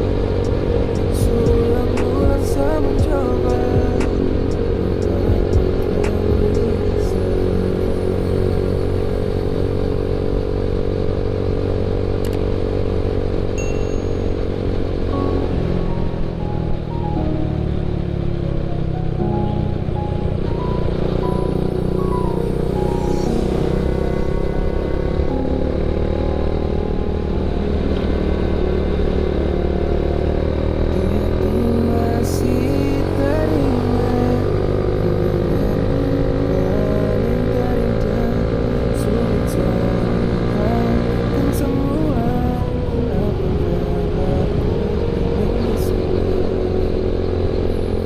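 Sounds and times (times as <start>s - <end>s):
motorcycle engine drone: 0.0s - 48.0s
wind and road noise: 0.0s - 48.0s.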